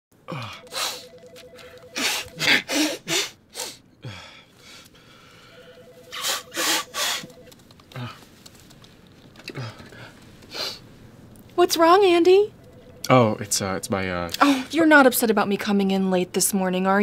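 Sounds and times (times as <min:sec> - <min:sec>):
man sniffling: 0:02.0 - 0:05.3.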